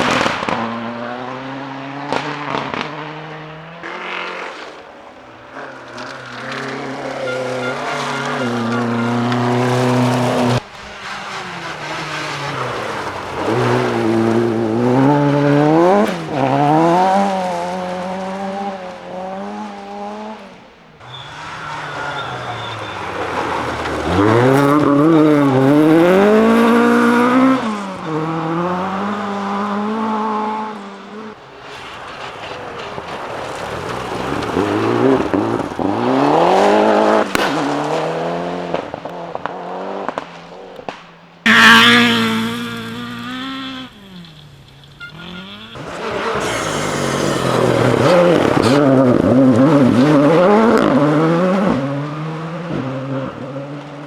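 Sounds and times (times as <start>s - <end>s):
rally cars passing: 0.0s - 54.0s.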